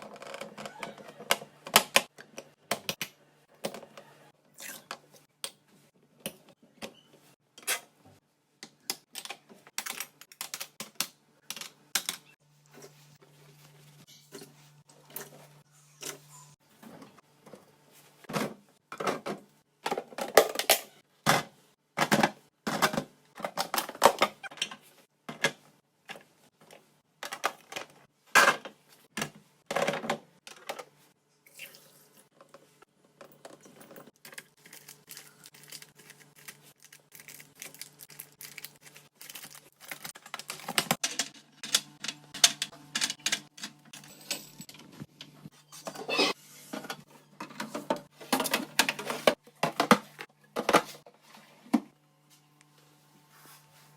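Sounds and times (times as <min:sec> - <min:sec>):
containers clattering on shelves: 0:18.2 - 0:25.6, 0:45.9 - 0:51.0.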